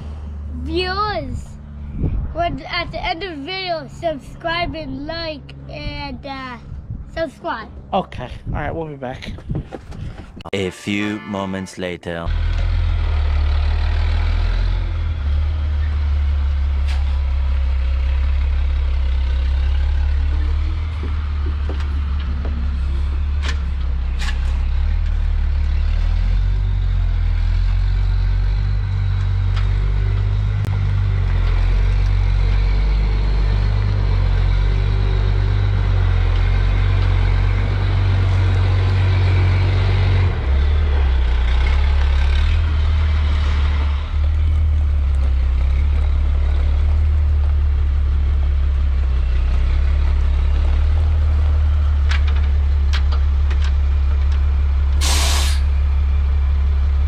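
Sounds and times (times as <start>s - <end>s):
heavy engine droning: 12.2s - 57.0s.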